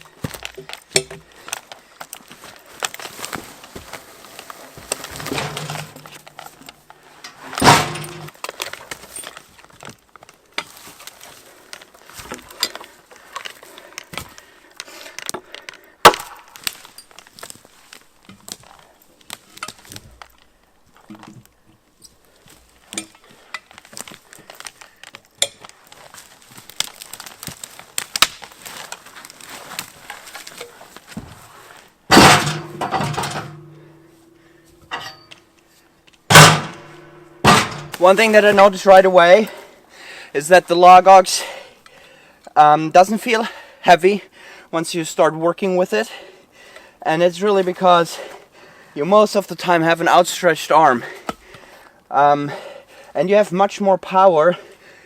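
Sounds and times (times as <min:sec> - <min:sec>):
logs knocking and clanking: 0:04.8 - 0:10.8, 0:32.1 - 0:33.9, 0:36.3 - 0:38.7
loud ringing impact: 0:36.3 - 0:38.0.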